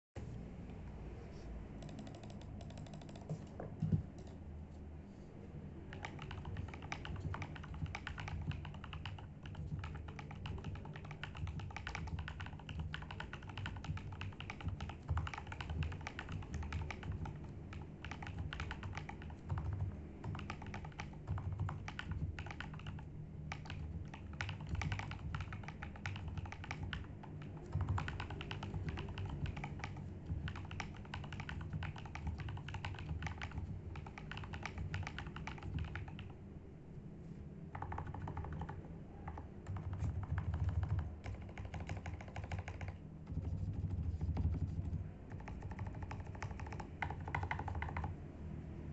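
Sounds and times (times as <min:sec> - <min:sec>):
mechanical keyboard key clacks: 0:05.9 - 0:36.3, 0:37.7 - 0:43.0, 0:45.3 - 0:48.1.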